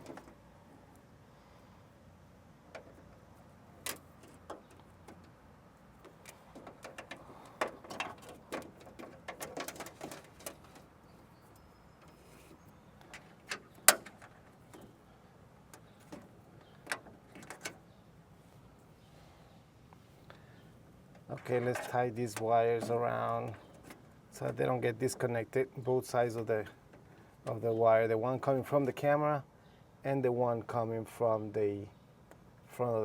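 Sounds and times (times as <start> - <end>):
cable rustling: 6.0 - 11.0.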